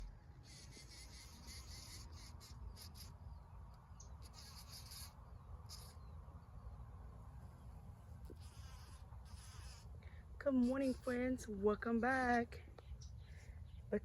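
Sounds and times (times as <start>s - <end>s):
steady low rumble: 0.0s - 0.4s.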